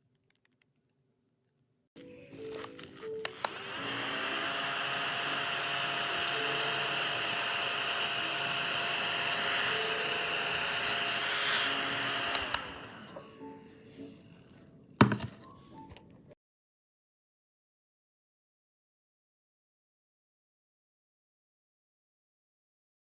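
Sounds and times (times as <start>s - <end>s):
desktop vacuum cleaner whirring: 2.0s - 15.9s.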